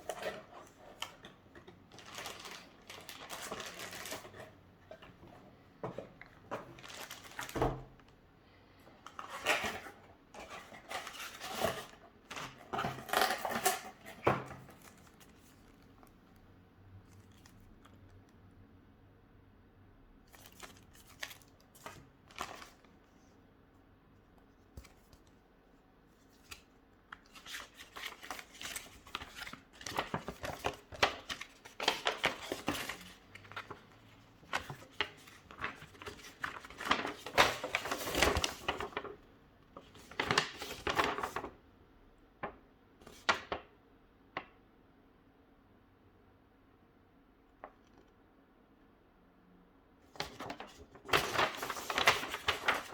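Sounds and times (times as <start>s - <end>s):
packaging rustling and crinkling: 0.0s - 8.1s, 20.3s - 23.0s, 26.3s - 39.2s, 50.2s - 52.9s.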